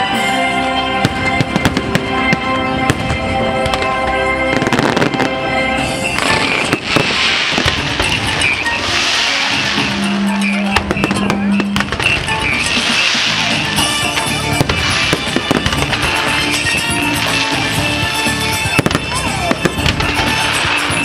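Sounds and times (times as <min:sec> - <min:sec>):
music: 0:00.0 - 0:21.0
fireworks bangs and pops: 0:01.0 - 0:21.0
fireworks crackling hiss: 0:01.0 - 0:21.0.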